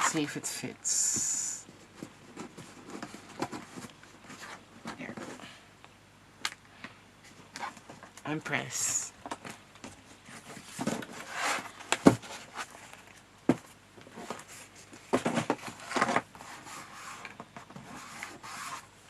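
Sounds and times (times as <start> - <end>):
cardstock rustling and scraping: 1.8 - 5.5, 9.4 - 13.2, 14.0 - 18.9.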